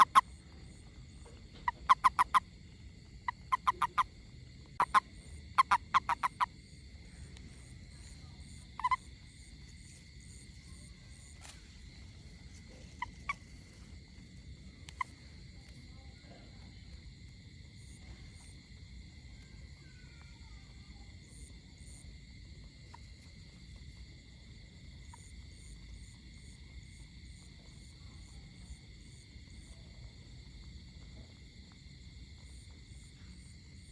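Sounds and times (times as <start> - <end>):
frog croaking: 0.0 - 20.2, 22.7 - 24.0, 25.0 - 26.6
high-pitched insect chorus: 0.0 - 33.9.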